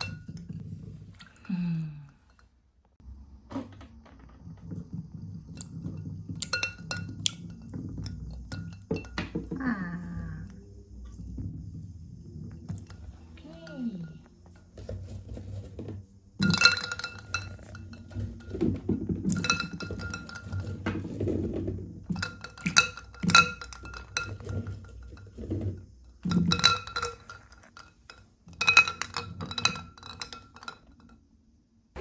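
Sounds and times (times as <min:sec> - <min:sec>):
low rolling rumble: 0:04.2 - 0:14.7
marbles clinking on wooden track: 0:16.4 - 0:31.2.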